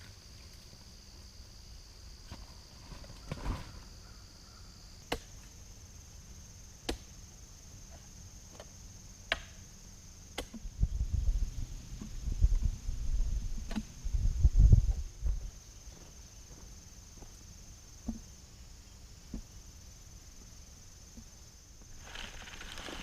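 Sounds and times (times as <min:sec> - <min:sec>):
brush rustling and rumbling: 0:02.4 - 0:04.2, 0:10.6 - 0:16.6, 0:21.8 - 0:23.0
machete chopping brush: 0:05.0 - 0:05.4, 0:06.8 - 0:07.1.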